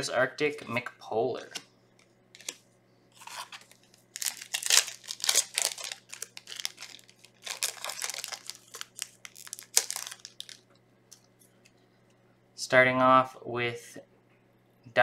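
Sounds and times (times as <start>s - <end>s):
wrapper crinkling and tearing: 3.2s - 10.7s.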